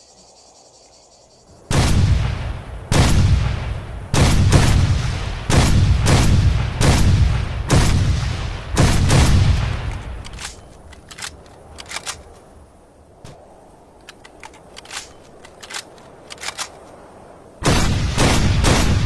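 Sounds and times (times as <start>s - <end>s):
rifle shot: 1.7s - 10.6s, 17.6s - 19.0s
small sharp clicks and ticks: 9.8s - 12.5s, 13.9s - 17.1s.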